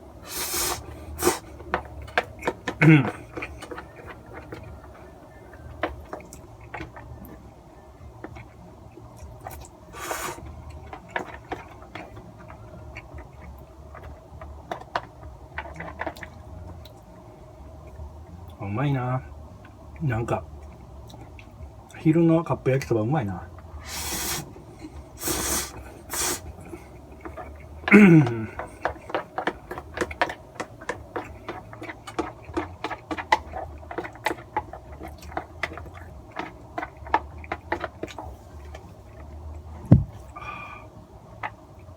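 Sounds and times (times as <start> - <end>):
man chewing noodles: 0.0 - 18.6, 19.6 - 21.9, 23.5 - 41.9
faint low hum: 0.0 - 41.9
chopsticks tapping container: 27.2 - 38.2.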